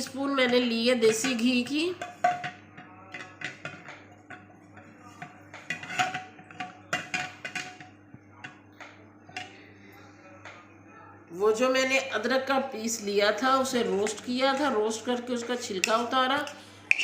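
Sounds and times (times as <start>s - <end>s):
teaspoon tapping metal cookware: 0.4s - 9.6s, 15.8s - 17.0s.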